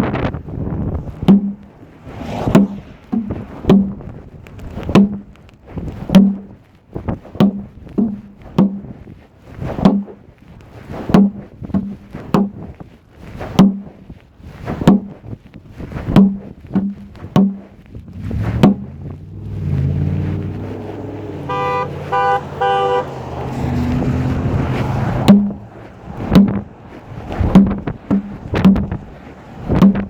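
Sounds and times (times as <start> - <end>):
sharp knocks with low tone: 1.2 - 6.6, 7.2 - 9.0, 9.7 - 10.2, 11.1 - 12.6, 16.1 - 19.6, 25.2 - 29.1, 29.7 - 30.0.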